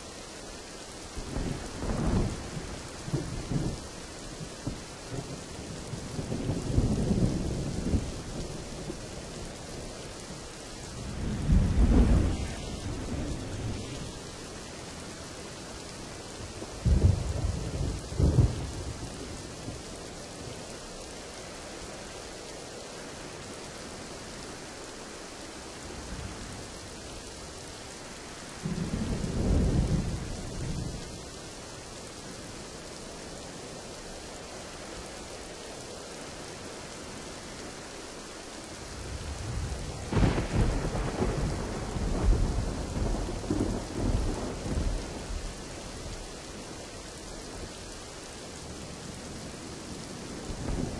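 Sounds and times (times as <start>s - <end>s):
heavy rain: 0.0s - 50.9s
thunder rumbling: 10.9s - 14.5s, 16.4s - 19.9s, 28.6s - 31.2s, 38.9s - 46.3s, 48.6s - 50.9s.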